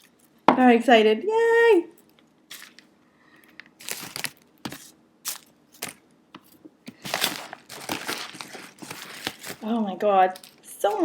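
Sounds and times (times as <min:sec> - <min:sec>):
packing material crinkling: 0:02.5 - 0:11.0.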